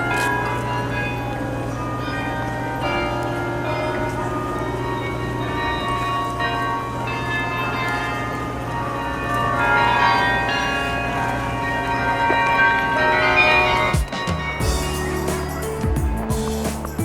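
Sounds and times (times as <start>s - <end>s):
carillon bells playing a tune: 0.0s - 17.0s.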